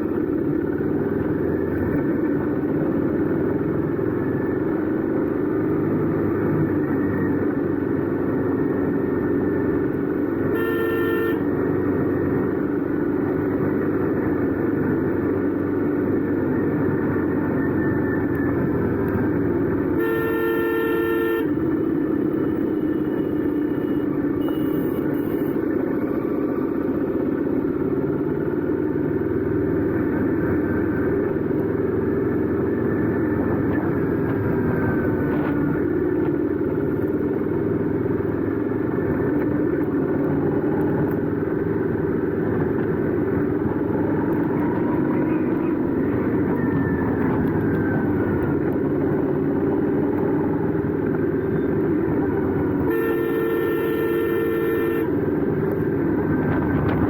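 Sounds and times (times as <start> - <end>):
motorcycle exhaust at road speed: 0.0 - 57.0
vehicle horn: 10.4 - 12.0, 19.8 - 25.7, 52.8 - 55.6.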